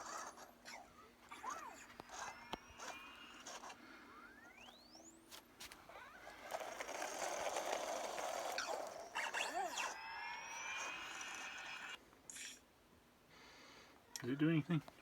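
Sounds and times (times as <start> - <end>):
steady whir: 0.0 - 12.0
electronic droid chirps: 8.6 - 12.0.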